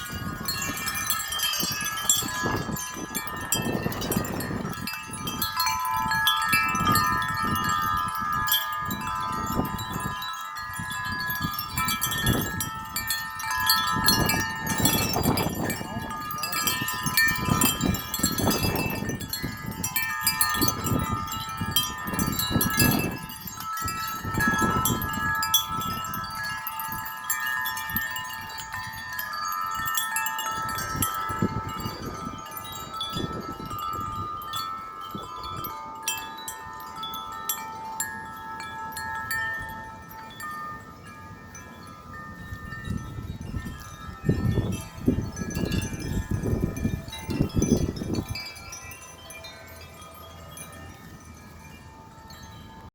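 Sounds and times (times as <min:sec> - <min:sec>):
wind chimes ringing: 0:00.0 - 0:52.9.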